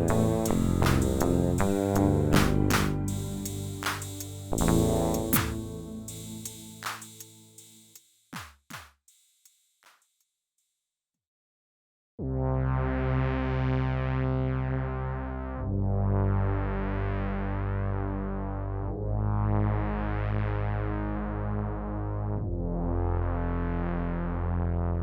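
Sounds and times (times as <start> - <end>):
synthesizer playing held chords: 0.0 - 7.7.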